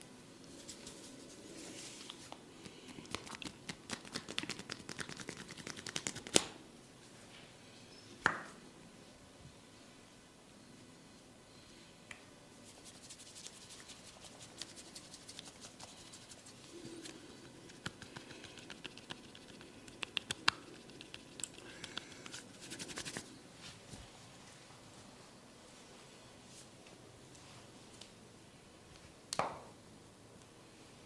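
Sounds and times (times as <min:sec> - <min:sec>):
fingers rubbing skin and hair: 0:00.5 - 0:06.4, 0:12.6 - 0:23.3.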